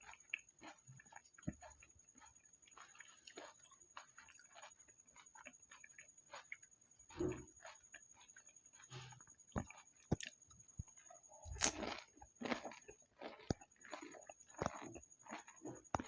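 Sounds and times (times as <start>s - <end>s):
crisp food crunching: 0.0s - 16.0s
wet chewing: 0.0s - 16.0s
mouth clicks and smacks: 9.2s - 16.0s.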